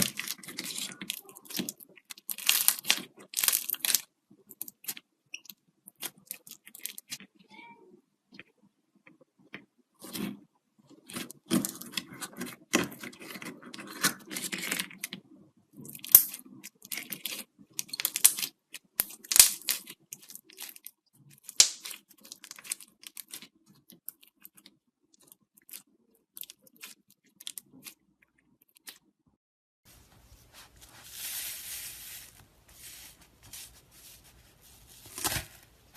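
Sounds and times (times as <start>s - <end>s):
slime crust crunching and crackling: 0.0s - 5.0s, 16.0s - 24.6s.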